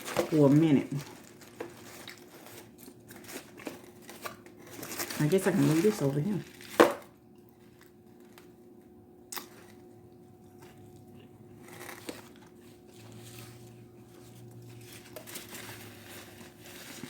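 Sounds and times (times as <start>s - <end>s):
faint crinkling: 0.0s - 8.6s.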